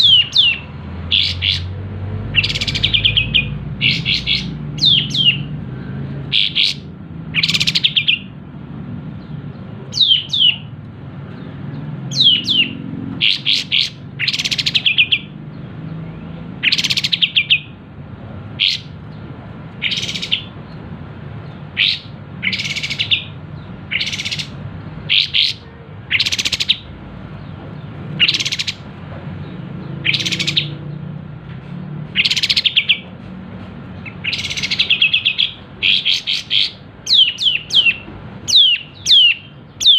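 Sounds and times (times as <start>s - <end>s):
bulbul calling in bright bursts: 0.0s - 5.5s, 6.2s - 8.4s, 9.9s - 10.7s, 12.1s - 15.3s, 16.6s - 17.8s, 18.5s - 19.0s, 19.8s - 20.6s, 21.5s - 26.9s, 28.2s - 28.8s, 30.0s - 30.8s, 32.2s - 33.0s, 34.0s - 39.9s.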